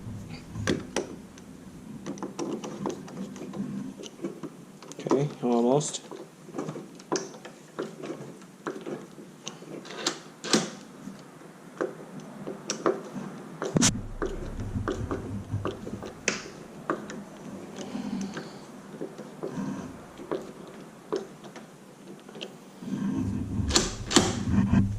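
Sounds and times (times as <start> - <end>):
brief low rumble: 0.0 - 2.3, 13.8 - 16.8
loud knock: 13.8 - 16.7.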